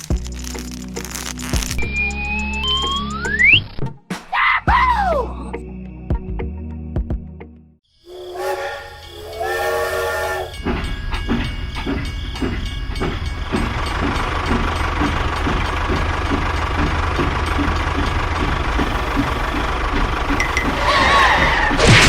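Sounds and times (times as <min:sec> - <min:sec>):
whistle-like hoots: 0:08.1 - 0:10.6.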